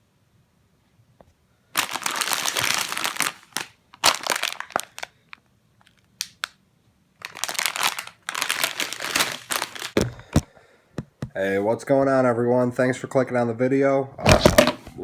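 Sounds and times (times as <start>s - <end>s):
packaging crackling: 1.8s - 6.6s, 7.2s - 10.4s.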